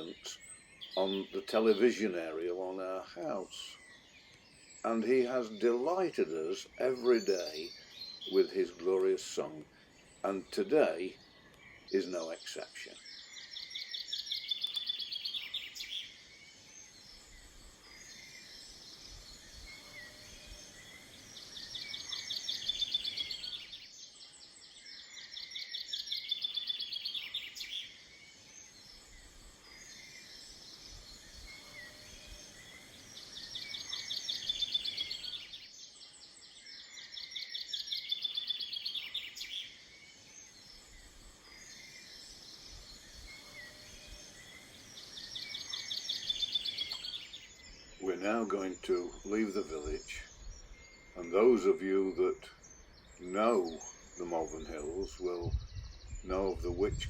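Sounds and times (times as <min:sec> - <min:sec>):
chaffinch singing: 0:00.0 - 0:57.0
faint birds calling: 0:00.0 - 0:57.0.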